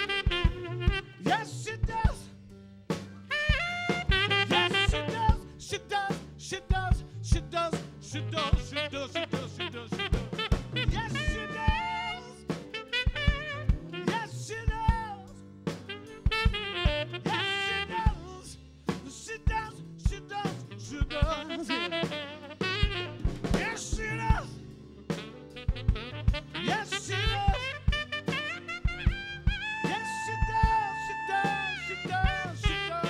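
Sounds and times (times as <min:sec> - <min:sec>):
drum kit steady beat: 0:00.0 - 0:33.0
lead instrument melody bending pitch: 0:03.3 - 0:05.3, 0:10.4 - 0:14.2.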